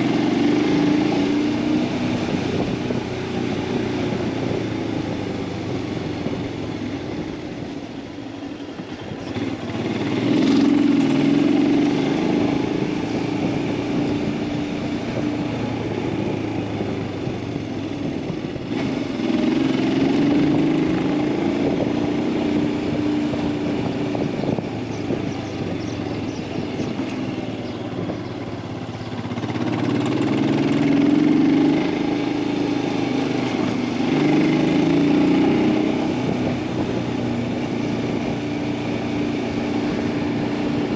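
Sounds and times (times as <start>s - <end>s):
motorcycle engine revving: 0.0s - 8.2s, 8.8s - 40.9s.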